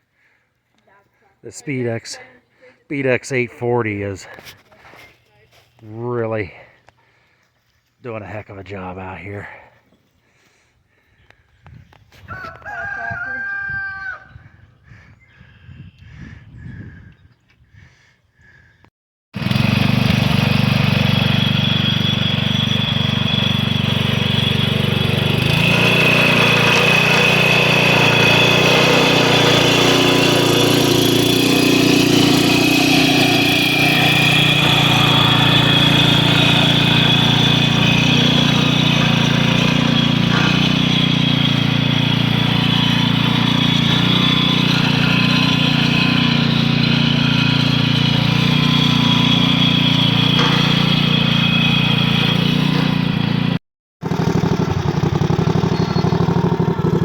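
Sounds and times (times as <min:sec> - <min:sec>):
garden tractor engine under load: 0:01.4 - 0:06.8, 0:08.0 - 0:09.7, 0:19.4 - 0:57.0.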